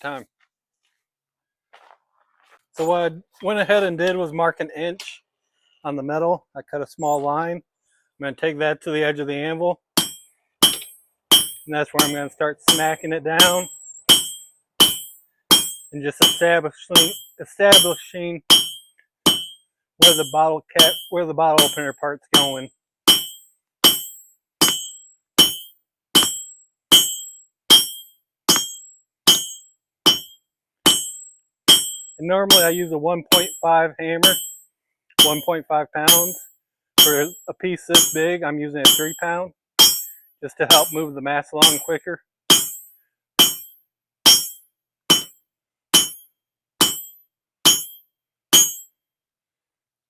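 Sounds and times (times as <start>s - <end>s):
hammer striking steel on anvil: 10.0s - 34.6s, 35.2s - 36.4s, 37.0s - 42.8s, 43.4s - 43.7s, 44.3s - 45.4s, 46.0s - 46.2s, 46.8s - 48.0s, 48.6s - 48.9s.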